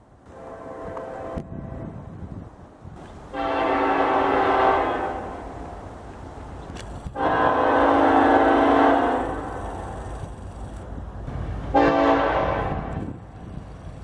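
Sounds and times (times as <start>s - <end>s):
locomotive air horn blasts: 0.3s - 2.0s, 3.3s - 5.8s, 7.1s - 9.9s, 11.7s - 13.1s.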